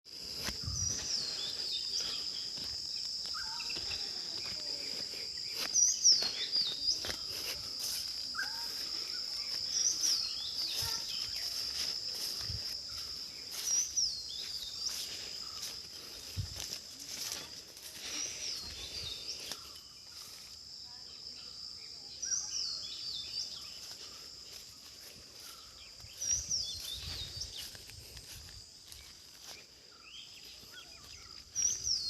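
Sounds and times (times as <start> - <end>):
high-pitched insect drone: 0.1 - 32.0.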